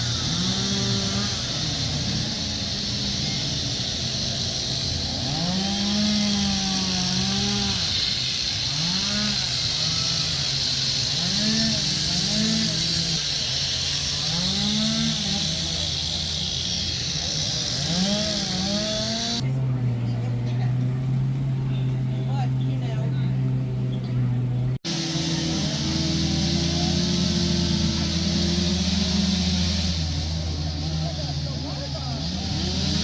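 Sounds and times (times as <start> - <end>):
chainsaws revving: 0.0 - 19.6, 20.3 - 33.0
steady high hiss: 24.9 - 33.0.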